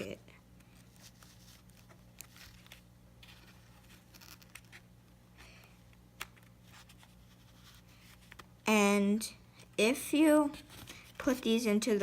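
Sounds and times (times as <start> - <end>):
low steady hum: 0.0 - 12.0
rustling of plastic parts: 0.6 - 8.5.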